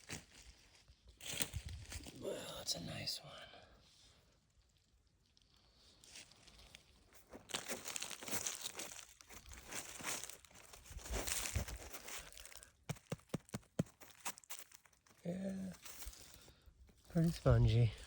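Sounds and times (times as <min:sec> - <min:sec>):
leaf litter rustling: 0:07.4 - 0:12.6.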